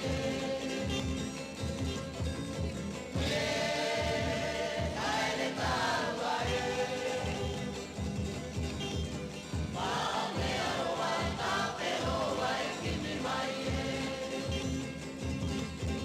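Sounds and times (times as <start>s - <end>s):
choir singing held notes: 0.0s - 1.2s, 3.2s - 8.0s, 9.7s - 15.0s.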